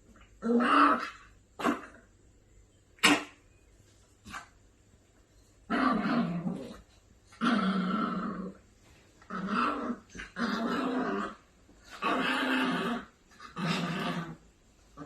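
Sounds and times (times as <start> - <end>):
puppy growling: 0.1 - 2.0, 5.7 - 15.0.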